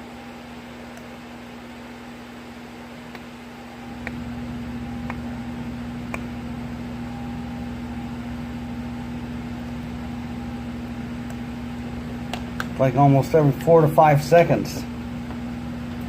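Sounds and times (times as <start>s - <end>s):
low hum with hiss: 0.0s - 16.0s.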